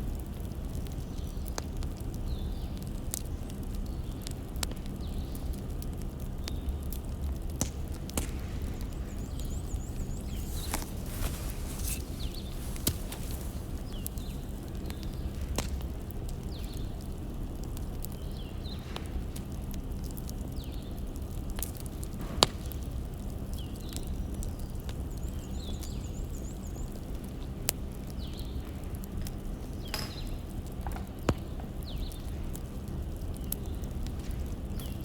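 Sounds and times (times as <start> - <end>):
wood fire crackling: 0.0 - 35.0
fire pops: 0.7 - 26.0.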